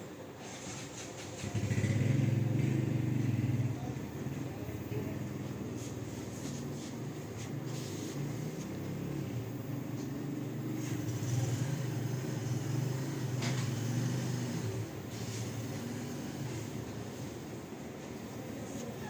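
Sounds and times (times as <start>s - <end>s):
motorcycle engine running: 1.4s - 5.8s.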